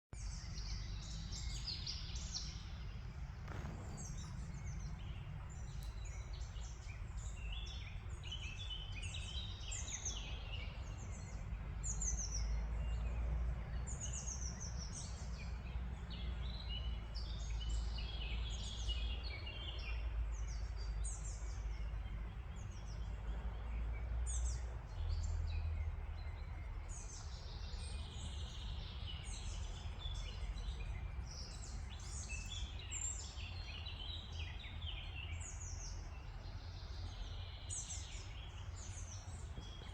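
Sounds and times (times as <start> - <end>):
steady low rumble: 0.2 - 19.3
small birds chirping: 0.2 - 39.9.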